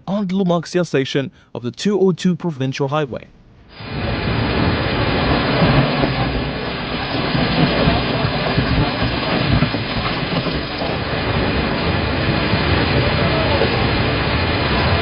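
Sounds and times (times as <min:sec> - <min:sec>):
landslide rumble: 0:03.7 - 0:15.0.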